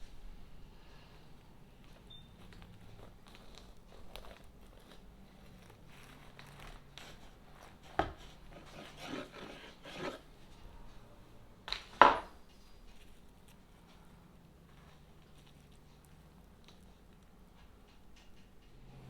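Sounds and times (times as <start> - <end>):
utensils scraping food: 2.6 - 10.3.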